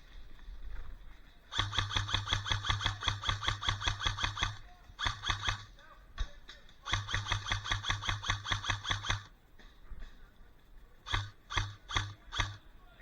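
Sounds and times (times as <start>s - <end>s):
motor hum: 0.0s - 13.0s
airsoft gun firing full auto: 1.5s - 9.4s, 10.9s - 12.8s.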